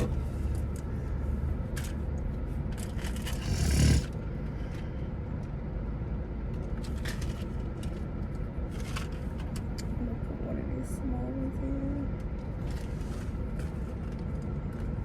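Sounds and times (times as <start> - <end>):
car engine running: 0.0 - 15.0
rustling scrape: 2.8 - 4.1, 12.6 - 14.0.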